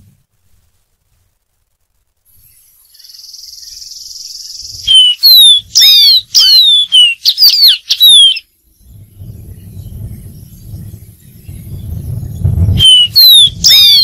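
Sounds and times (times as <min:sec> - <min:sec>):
steady high hiss: 0:00.0 - 0:07.0
bird whistling song: 0:02.4 - 0:14.0
low rumble: 0:08.7 - 0:12.9.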